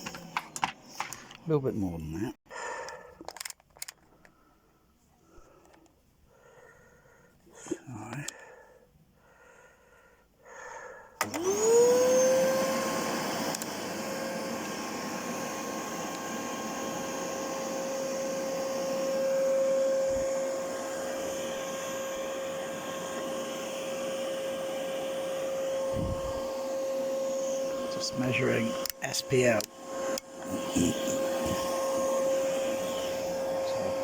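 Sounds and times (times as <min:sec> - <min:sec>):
vacuum cleaner motor whine: 0:11.2 - 0:34.0.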